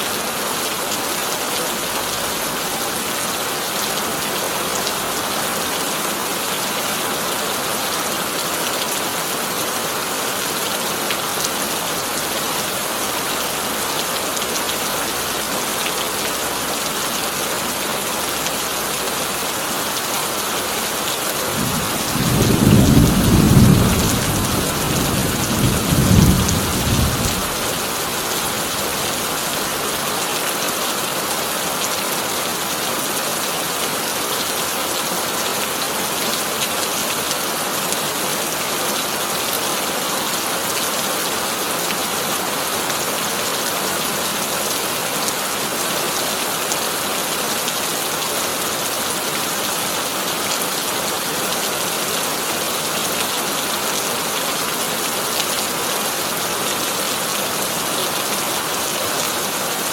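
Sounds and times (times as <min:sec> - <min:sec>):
heavy rain on a tin roof: 0:00.0 - 0:59.9
low thunder rumble: 0:21.5 - 0:27.8.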